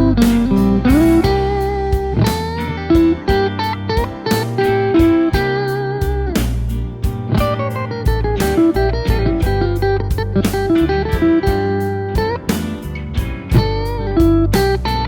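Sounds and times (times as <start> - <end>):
electric guitar blues notes: 0.0 - 15.0
strummed guitar chord: 0.0 - 15.0.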